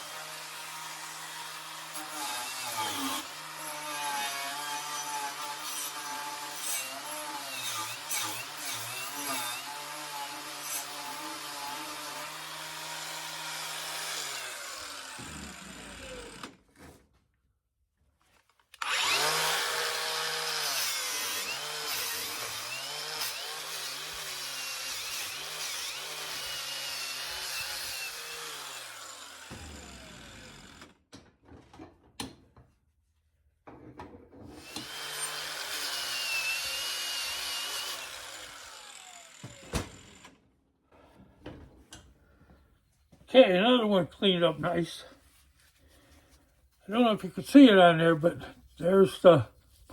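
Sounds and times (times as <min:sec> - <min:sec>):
power tool motor: 0:00.0 - 0:16.6, 0:18.8 - 0:31.0, 0:34.6 - 0:40.4.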